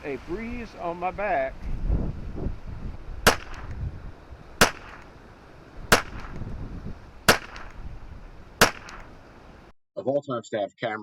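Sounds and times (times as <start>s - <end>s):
low wind rumble: 0.0s - 9.7s
rifle shots sharp crack: 3.2s - 3.8s, 4.6s - 5.2s, 5.9s - 6.5s, 7.2s - 7.9s, 8.6s - 9.2s.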